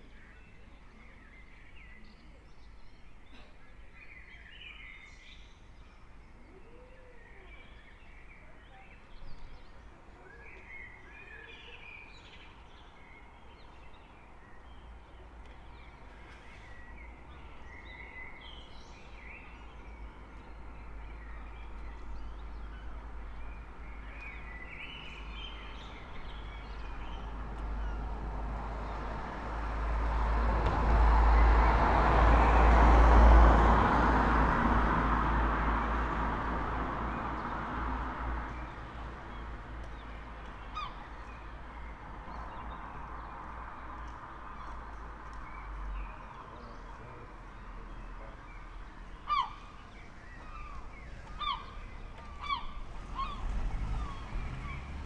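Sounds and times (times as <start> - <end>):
small birds chirping: 0.0 - 29.1, 36.8 - 55.0
street noise rumble: 0.0 - 55.0
vehicle approaching: 19.3 - 55.0.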